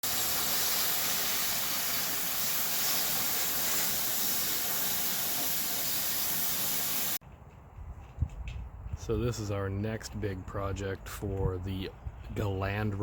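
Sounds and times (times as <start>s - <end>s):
loud steady hiss: 0.0s - 7.2s.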